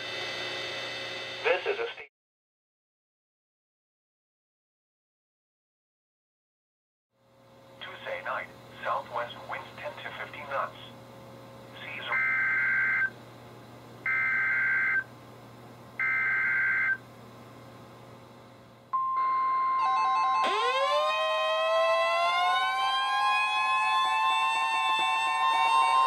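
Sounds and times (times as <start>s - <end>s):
steady warning alarm tone: 11.9s - 13.1s, 14.1s - 15.1s, 16.0s - 17.0s, 19.0s - 26.0s
pulsing alarm beeps: 12.1s - 13.1s, 14.1s - 15.1s, 16.0s - 17.0s, 19.0s - 22.2s
siren-like rising alarm tone: 19.0s - 26.0s.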